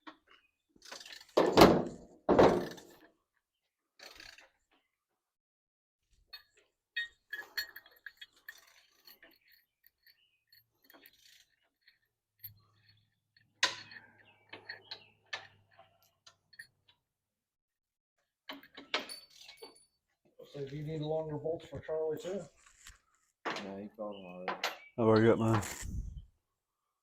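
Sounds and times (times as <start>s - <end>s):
metal tools clicking and clinking: 6.1s - 17.0s, 18.4s - 20.0s.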